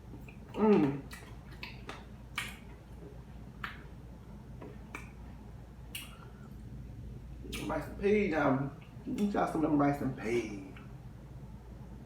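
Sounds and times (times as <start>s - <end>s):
wet chewing: 0.0s - 4.0s
mouth and lip clicks: 0.1s - 3.9s, 4.6s - 5.2s, 5.8s - 6.5s, 7.4s - 7.8s.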